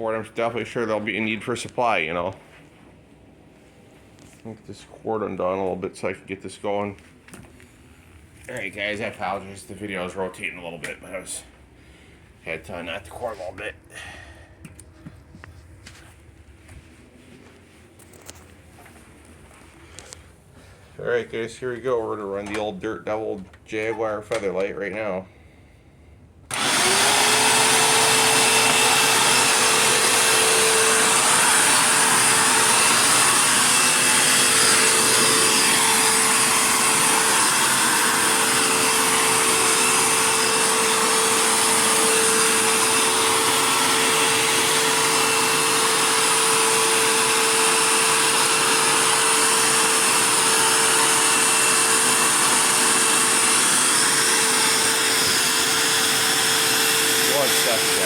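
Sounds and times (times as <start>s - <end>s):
upright vacuum cleaner running: 26.5s - 58.0s.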